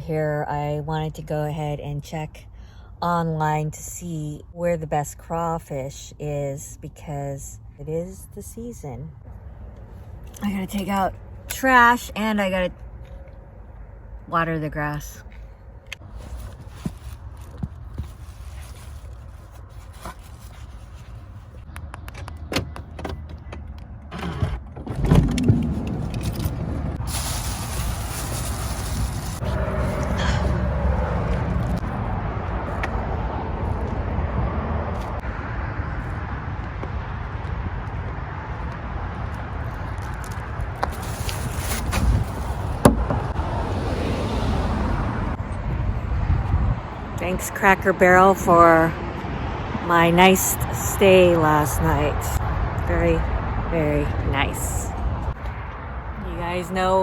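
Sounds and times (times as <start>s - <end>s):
low outdoor rumble: 0.0s - 57.0s
low steady rumble: 23.8s - 43.8s.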